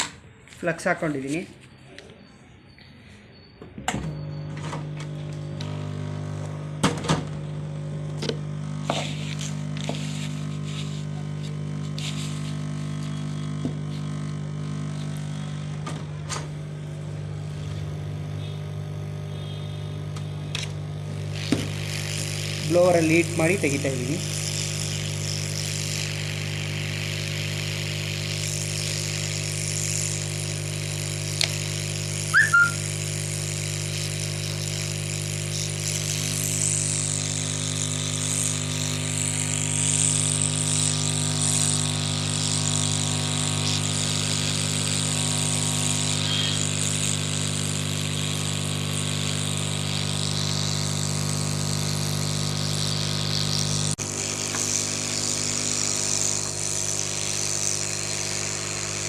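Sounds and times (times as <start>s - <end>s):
hot-air blower hum and hiss: 5.0s - 59.0s
short high chirp: 32.3s - 32.8s.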